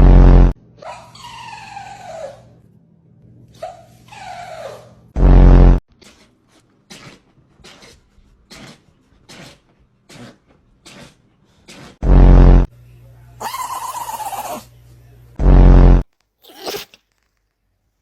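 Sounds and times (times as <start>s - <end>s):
loud blaring blast: 0.0s - 0.6s, 5.2s - 5.8s, 12.0s - 12.7s
animal whining calls: 0.8s - 2.6s, 3.6s - 5.0s, 13.4s - 14.7s.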